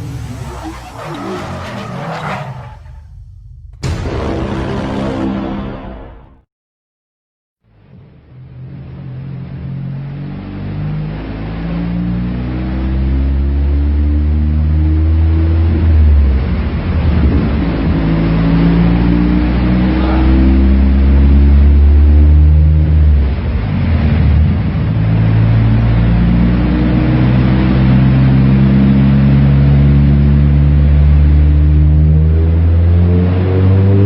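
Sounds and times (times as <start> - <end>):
car engine running on dyno: 7.9 - 34.0.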